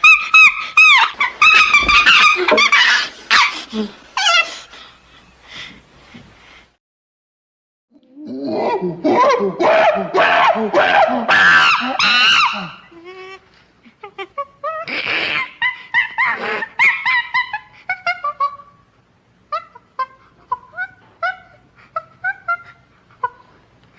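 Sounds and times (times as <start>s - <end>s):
chimpanzee hooting screams: 0.0s - 3.6s, 8.6s - 13.0s.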